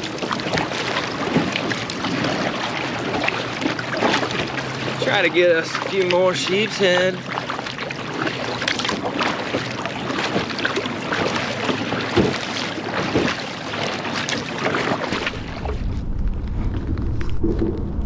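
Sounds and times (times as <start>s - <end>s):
water splashing around kayak: 0.0s - 18.0s
wind rumble on microphone: 15.1s - 18.0s.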